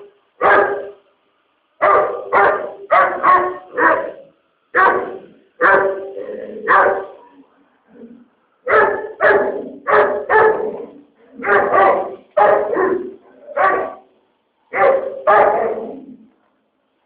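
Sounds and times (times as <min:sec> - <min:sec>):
dog barking: 0:00.4 - 0:01.0, 0:01.8 - 0:07.2, 0:08.6 - 0:14.1, 0:14.7 - 0:16.1.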